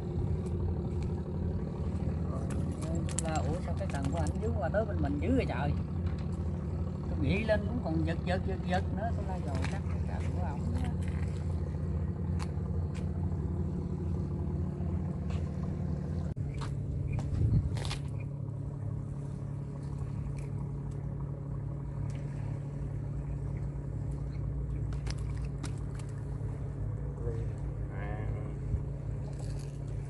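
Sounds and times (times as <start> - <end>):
small engine running: 0.0 - 30.0.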